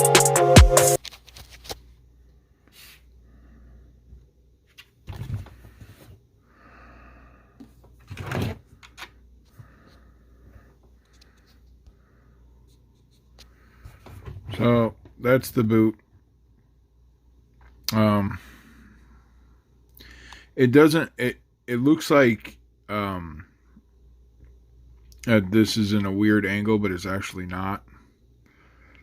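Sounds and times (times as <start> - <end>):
background music: 0.0 - 1.0.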